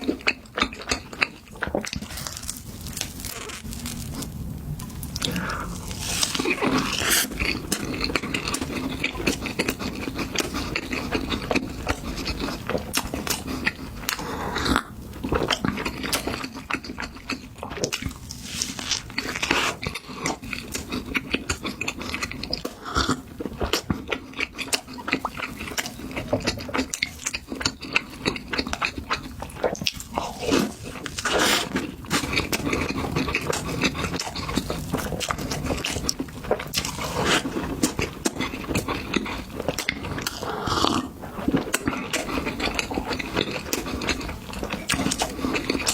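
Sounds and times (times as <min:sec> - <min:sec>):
chewing and biting: 0:00.0 - 0:45.9
steady low hum: 0:02.0 - 0:12.5.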